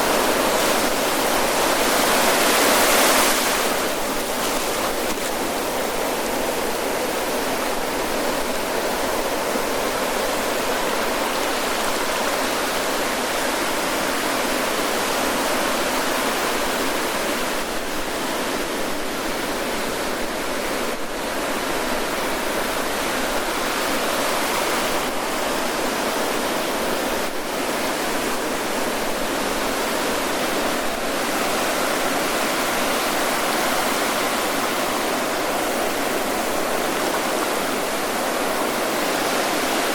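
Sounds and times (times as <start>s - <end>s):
waves breaking on beach: 0.0s - 39.9s.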